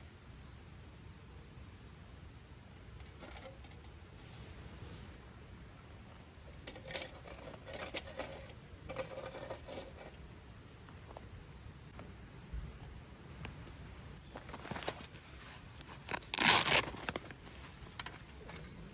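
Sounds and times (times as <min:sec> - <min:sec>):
faint low background noise: 0:00.0 - 0:18.9.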